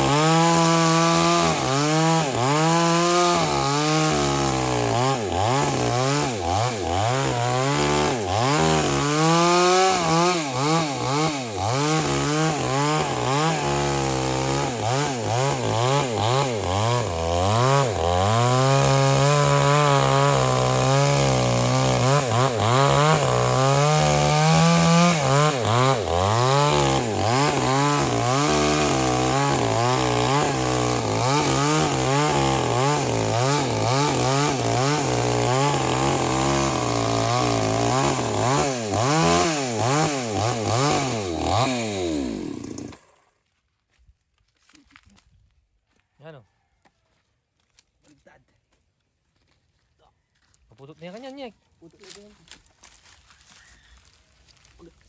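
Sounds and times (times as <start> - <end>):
chainsaw cutting wood: 0.0 - 43.4.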